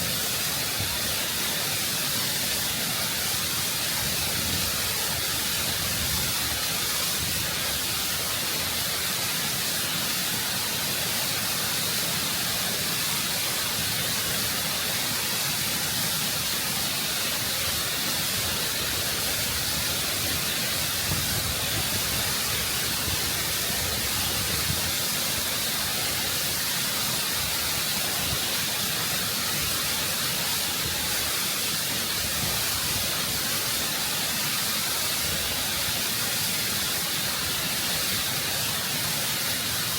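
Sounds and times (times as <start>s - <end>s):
waterfall roaring: 0.0s - 39.9s.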